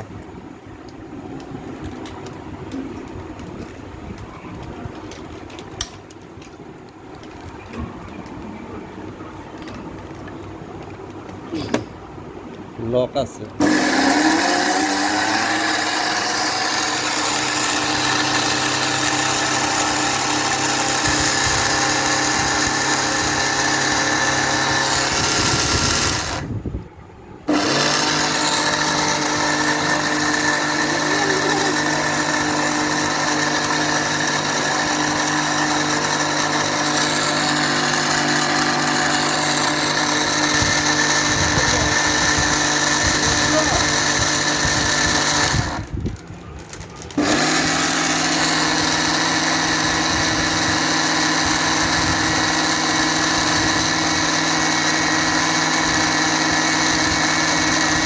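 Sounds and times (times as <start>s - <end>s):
mixer grinder grinding seeds: 13.6s - 26.6s, 27.5s - 58.0s.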